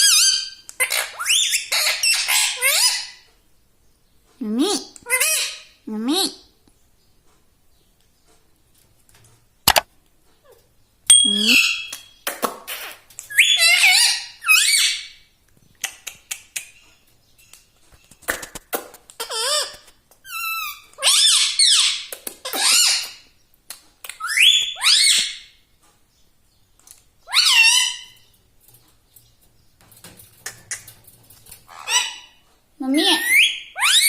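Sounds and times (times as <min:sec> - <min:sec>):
parrot squeaky calls: 0:00.0 - 0:03.3, 0:05.0 - 0:05.8, 0:11.1 - 0:15.2, 0:19.2 - 0:23.3, 0:24.2 - 0:25.5, 0:27.2 - 0:28.3, 0:31.7 - 0:32.4, 0:33.0 - 0:34.0.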